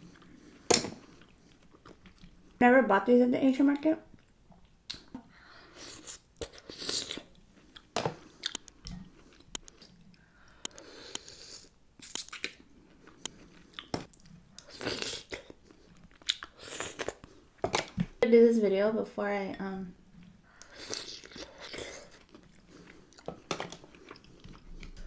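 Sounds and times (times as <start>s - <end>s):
person chewing wetly: 8.5s - 8.7s, 10.7s - 11.4s, 12.1s - 12.5s, 20.6s - 25.0s.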